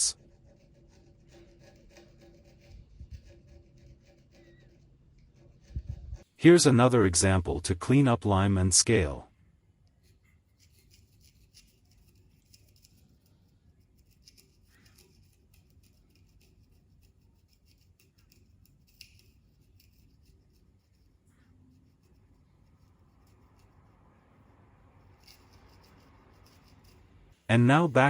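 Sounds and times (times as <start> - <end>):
low room hum: 0.0 - 28.0
screwdriver scraping limescale: 0.5 - 6.3, 10.2 - 21.1, 25.0 - 27.1.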